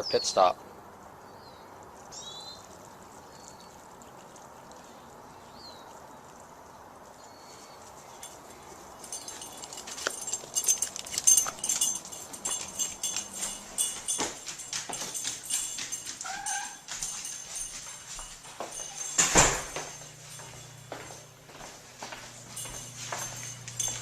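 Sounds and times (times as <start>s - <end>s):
bird chirps: 1.2s - 3.8s
clicks and rustling: 9.0s - 16.3s.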